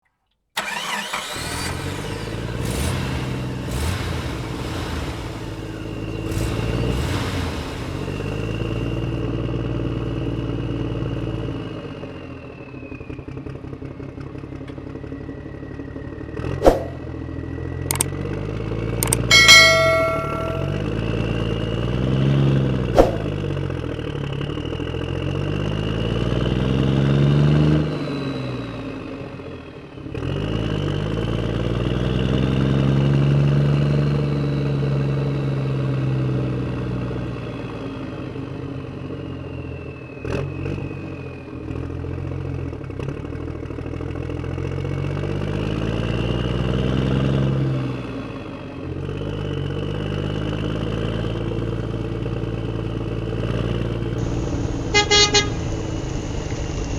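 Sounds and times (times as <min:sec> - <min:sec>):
truck engine revving: 0:00.6 - 0:09.5, 0:53.2 - 0:56.9
sharp click: 0:19.0 - 0:20.8.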